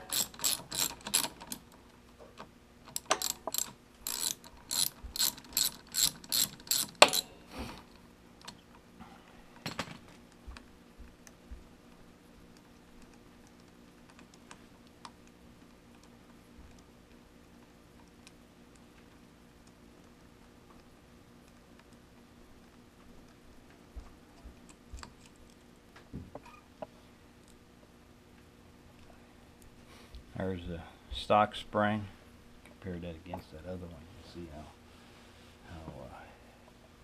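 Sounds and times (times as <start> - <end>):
hand ratchet clicking: 0.0 - 1.7, 2.9 - 7.3.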